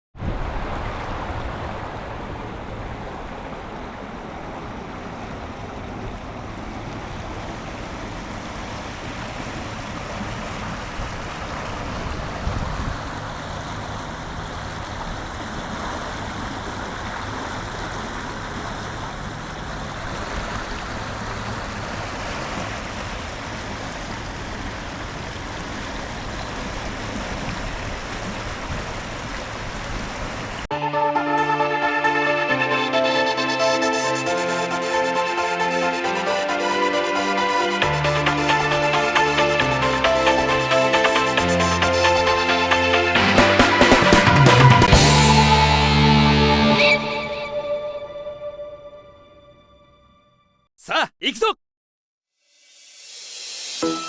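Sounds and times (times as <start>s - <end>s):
river water rushing: 0.4s - 30.6s.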